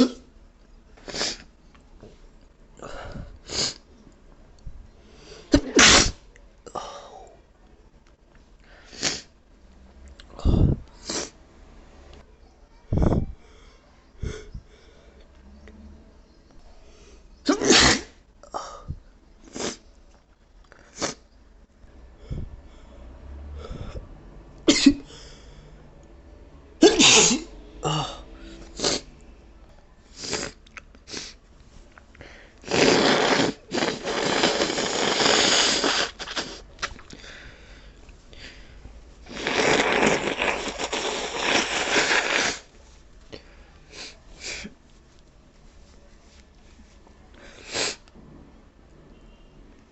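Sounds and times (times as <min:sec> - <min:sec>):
person sneezing: 0:00.0 - 0:00.3, 0:05.5 - 0:06.2, 0:17.4 - 0:18.8, 0:26.8 - 0:29.1.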